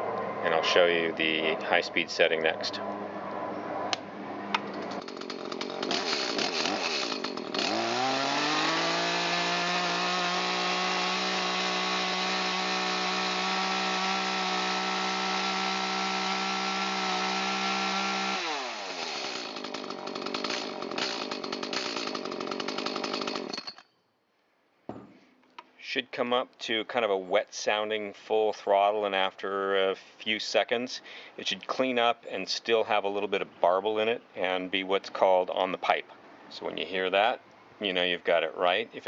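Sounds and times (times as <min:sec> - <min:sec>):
chainsaw revving to full throttle: 0:05.0 - 0:23.6.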